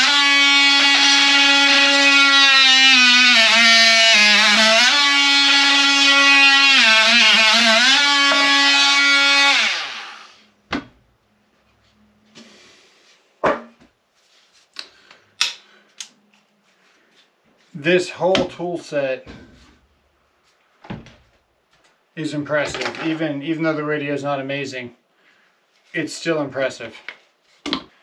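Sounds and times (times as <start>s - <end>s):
sharp knocks: 13.4s - 13.9s.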